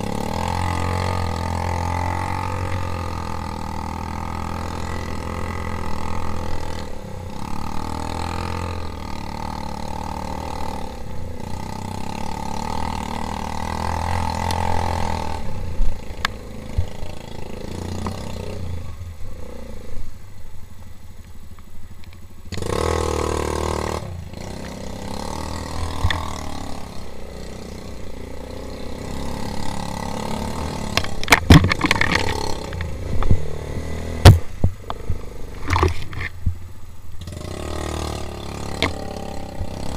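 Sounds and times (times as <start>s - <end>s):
quad bike engine revving: 0.0s - 20.0s, 22.5s - 36.3s, 37.2s - 39.9s
sharp knocks and rattling: 30.8s - 33.4s.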